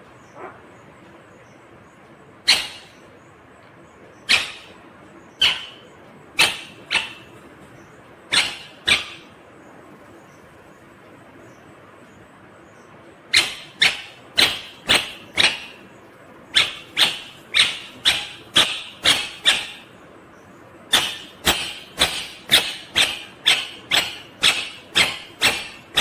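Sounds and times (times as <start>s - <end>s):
parakeet calling: 0.2s - 0.9s, 2.4s - 3.1s, 4.1s - 11.6s, 12.7s - 26.0s.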